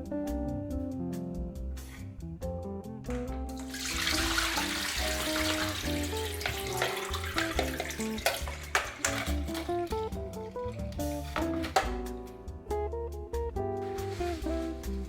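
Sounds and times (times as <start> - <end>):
acoustic guitar music: 3.1 - 15.0
water pouring and splashing: 3.6 - 12.2, 13.8 - 15.0.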